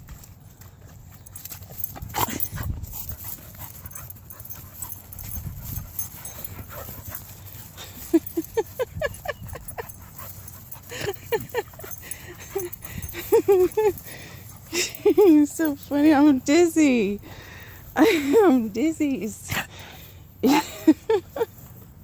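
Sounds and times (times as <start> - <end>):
dog whining and yipping: 2.2 - 15.1.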